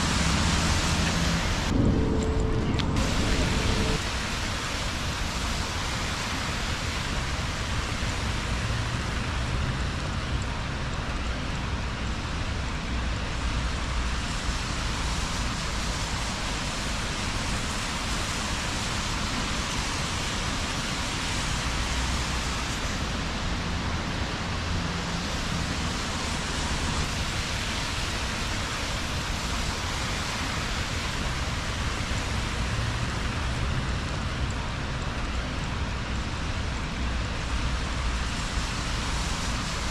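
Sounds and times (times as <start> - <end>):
low rumble: 0.0 - 4.6
rain on a wet street: 0.0 - 39.9.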